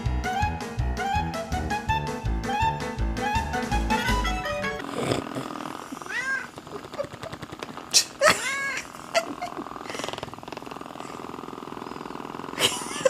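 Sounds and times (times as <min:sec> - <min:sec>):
cat meowing: 0:06.0 - 0:06.6.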